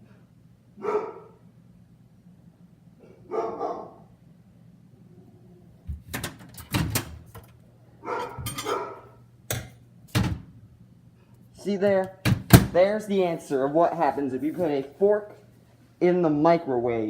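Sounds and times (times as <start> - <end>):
faint low hum: 0.0 - 17.0
dog barking: 0.8 - 1.4, 3.0 - 4.1, 8.0 - 9.2.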